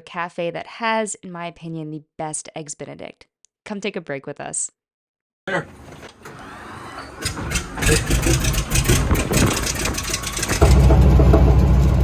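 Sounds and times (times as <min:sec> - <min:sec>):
aircraft engine cranking and running: 0:05.5 - 0:12.0.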